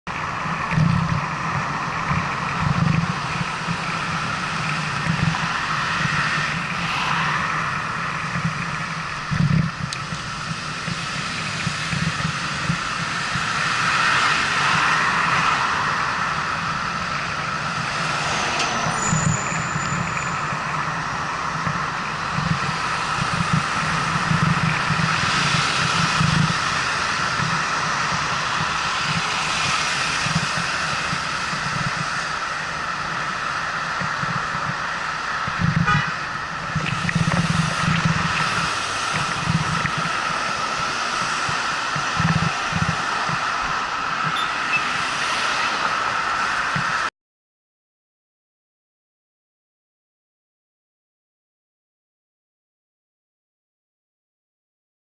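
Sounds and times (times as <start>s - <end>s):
cars passing close by: 0.1s - 47.1s
wind thumps on microphone: 0.5s - 47.1s
brief high squeal: 18.8s - 20.4s.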